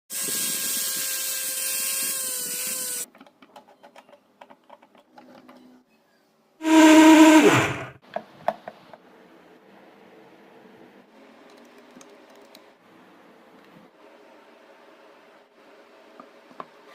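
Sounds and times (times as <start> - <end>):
blender motor whine: 0.1 - 3.1, 6.6 - 7.9.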